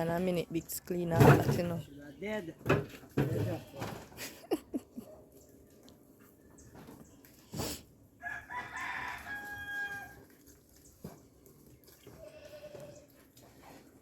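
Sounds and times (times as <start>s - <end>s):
rooster crowing: 8.2s - 10.2s.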